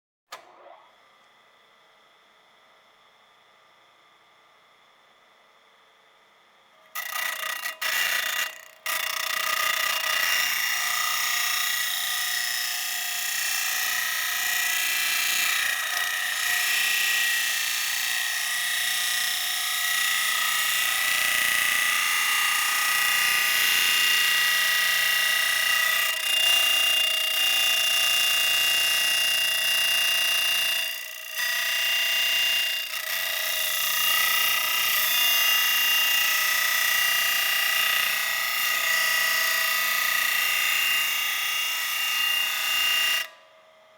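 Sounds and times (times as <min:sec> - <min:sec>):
electric grinder whining: 0:06.9 - 0:43.4.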